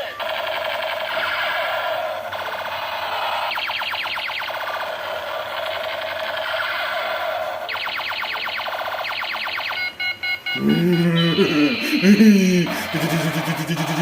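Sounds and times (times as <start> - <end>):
fast electronic zaps: 0.2 - 9.8
electronic toy gun tone: 2.9 - 13.7.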